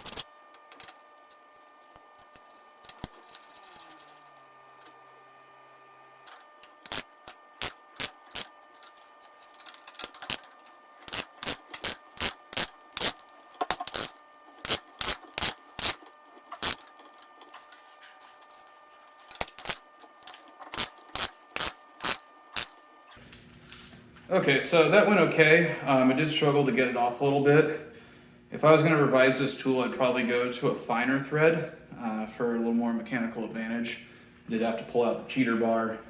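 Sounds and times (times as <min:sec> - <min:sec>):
wrench ratcheting clicks: 0:06.8 - 0:08.5, 0:11.1 - 0:16.0, 0:16.6 - 0:16.8, 0:20.7 - 0:22.7.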